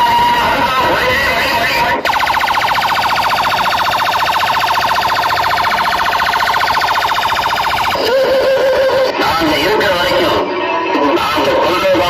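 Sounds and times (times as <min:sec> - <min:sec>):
electronic siren warble: 0:00.0 - 0:09.1.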